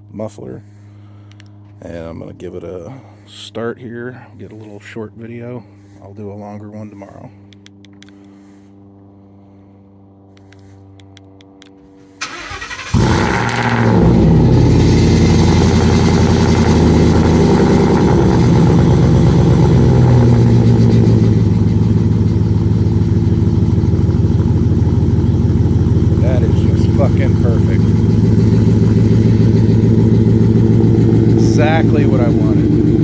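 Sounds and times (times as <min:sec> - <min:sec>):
engine revving and idling: 0:12.2 - 0:33.0.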